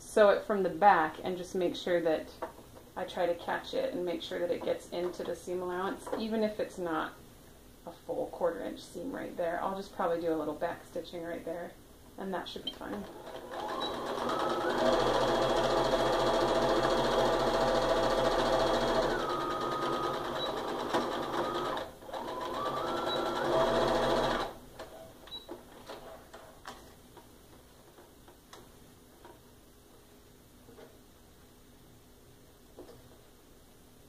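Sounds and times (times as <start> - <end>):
electric sewing machine stitching: 13.1 - 24.6.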